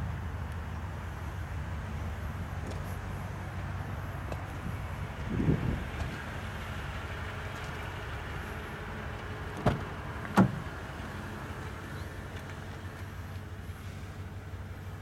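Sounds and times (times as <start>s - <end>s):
pickup truck engine running: 0.0s - 15.0s
low rumble: 3.7s - 7.6s.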